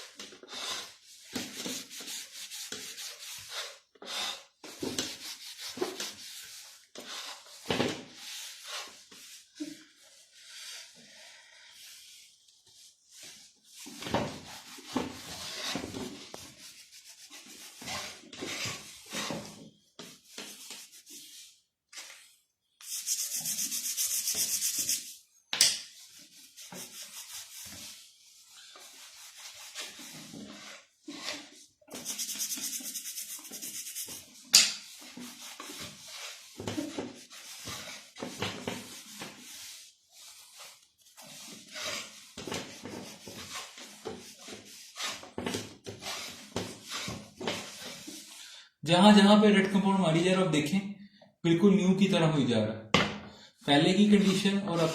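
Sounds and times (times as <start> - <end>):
hand scrubbing metal hub: 22.8 - 25.2, 31.9 - 34.9.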